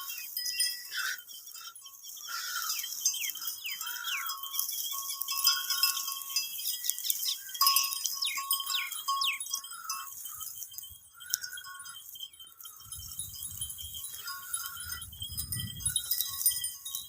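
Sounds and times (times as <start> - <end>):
tinkling bells: 0.0 - 17.0
sheep bleating: 2.3 - 2.9.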